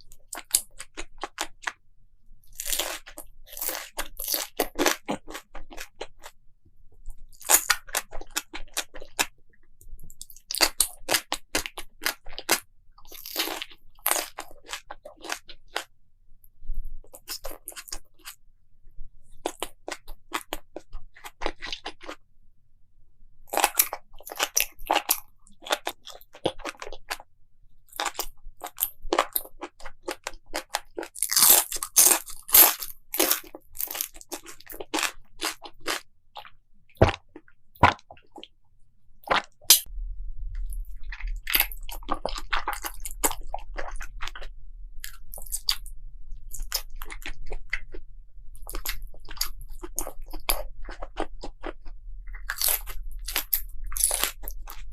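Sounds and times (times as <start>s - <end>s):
person chewing crunchy food: 0.0s - 1.8s, 2.4s - 6.4s, 7.0s - 9.4s, 10.0s - 15.9s, 17.0s - 18.4s, 19.3s - 22.2s, 23.5s - 27.3s, 27.9s - 38.6s, 39.2s - 39.9s, 40.5s - 54.9s
low steady hum: 39.7s - 48.7s.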